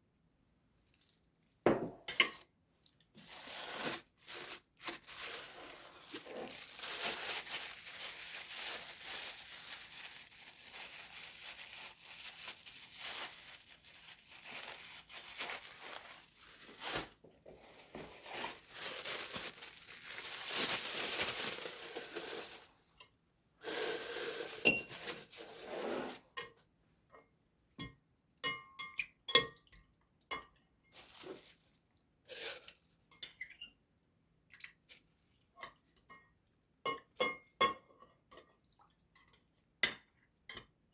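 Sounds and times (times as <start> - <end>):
rustling and scraping: 3.2 - 22.8, 23.6 - 26.4, 31.0 - 31.7.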